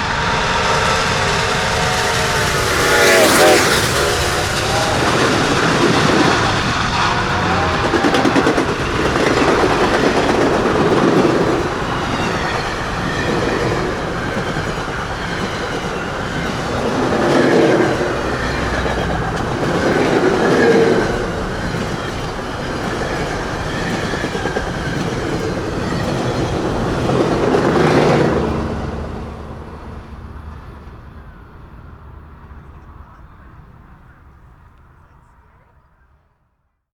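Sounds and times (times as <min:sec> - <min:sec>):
train wheels clattering on rails: 0:00.0 - 0:33.8.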